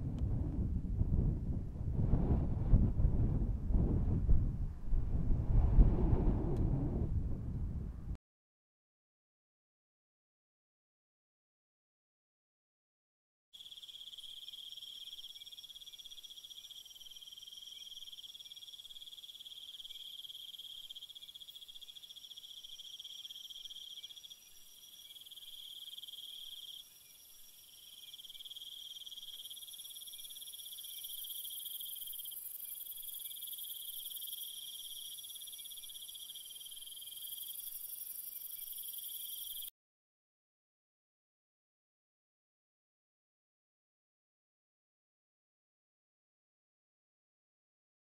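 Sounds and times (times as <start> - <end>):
crickets trilling: 13.6 - 39.7
hissing insects: 13.6 - 39.7.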